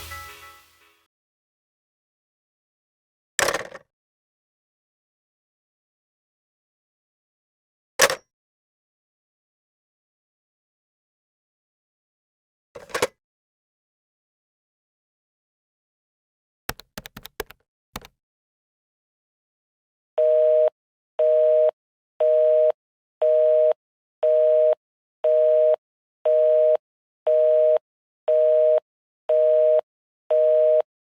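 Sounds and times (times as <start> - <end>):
busy signal two-tone beep: 20.2 - 30.9.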